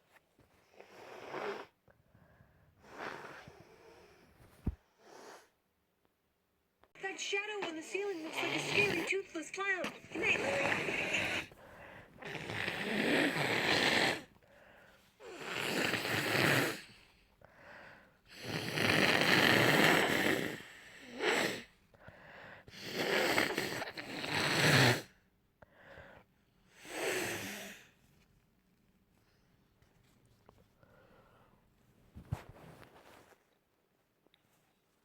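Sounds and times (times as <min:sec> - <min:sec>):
person blowing nose: 0:00.7 - 0:01.8, 0:02.8 - 0:04.0, 0:05.0 - 0:05.6, 0:08.0 - 0:09.2, 0:10.0 - 0:11.6, 0:12.2 - 0:14.3, 0:15.2 - 0:16.9, 0:18.3 - 0:21.7, 0:22.7 - 0:25.1, 0:26.7 - 0:27.9.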